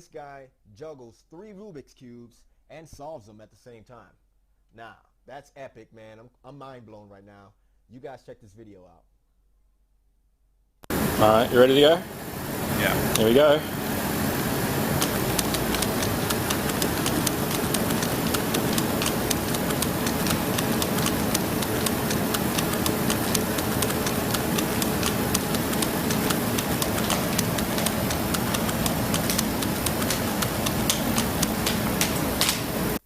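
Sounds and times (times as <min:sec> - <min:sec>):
steady background noise: 0:10.9 - 0:33.0.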